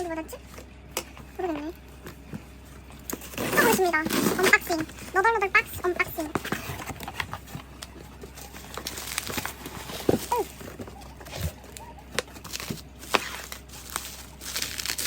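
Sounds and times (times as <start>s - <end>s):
cardboard box being opened: 3.1s - 5.2s, 5.8s - 15.0s.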